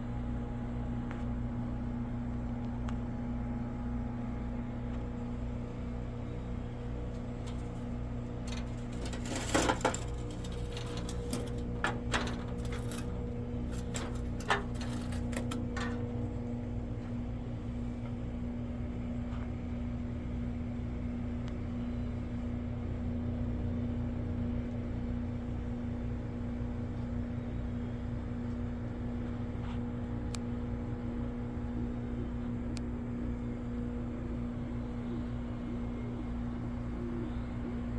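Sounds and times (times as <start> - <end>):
low machine hum: 0.0 - 37.9
sharp knocks and clatters: 8.4 - 16.1.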